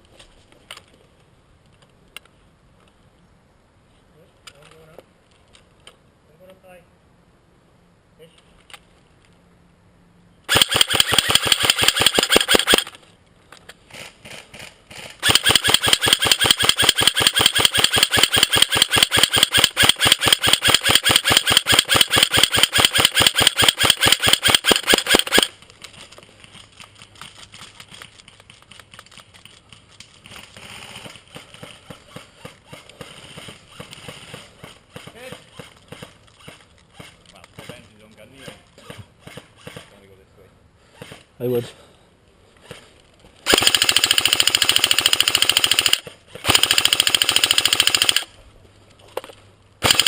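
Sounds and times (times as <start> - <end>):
airsoft gun firing full auto: 10.5 - 13.0, 15.2 - 25.6, 43.4 - 48.3, 49.8 - 50.0.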